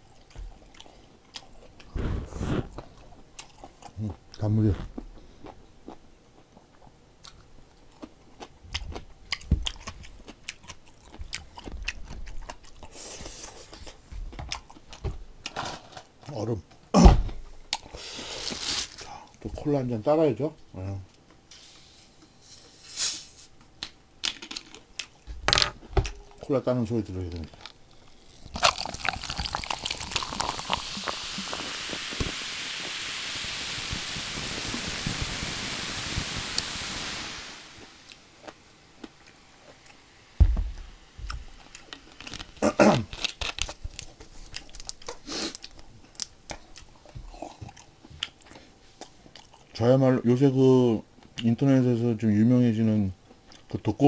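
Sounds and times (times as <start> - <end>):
chewing and crunching food: 0.0 - 19.8, 23.6 - 33.0, 37.8 - 40.3, 41.0 - 49.8, 50.5 - 52.0, 53.1 - 54.0
short hiss: 1.8 - 3.2, 21.5 - 23.4
cola fizzing in a glass: 28.2 - 38.2.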